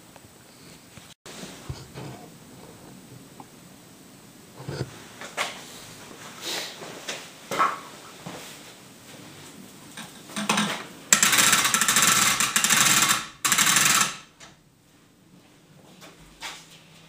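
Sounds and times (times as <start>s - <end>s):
rope ratchet rattling: 11.2s - 14.3s.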